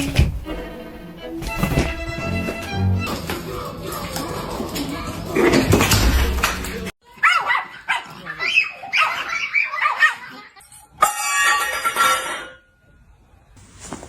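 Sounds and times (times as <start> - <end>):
dog yipping and barking: 7.2 - 10.4.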